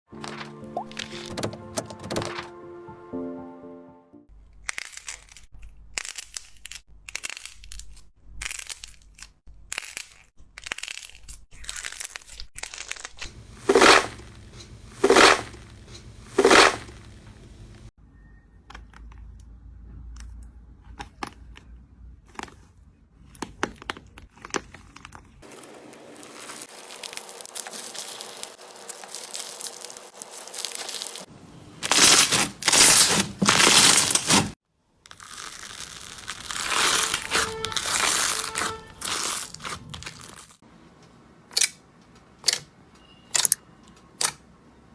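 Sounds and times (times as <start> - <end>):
slime crackling and tearing: 4.6 - 17.8, 24.4 - 40.6
loud slime squeezes: 10.8 - 17.1, 26.2 - 40.6.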